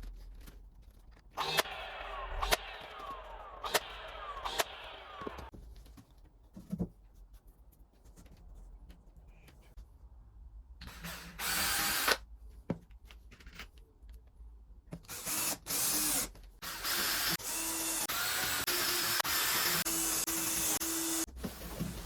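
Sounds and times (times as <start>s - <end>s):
power drill running: 1.4s - 5.5s, 11.1s - 12.2s, 15.1s - 21.3s.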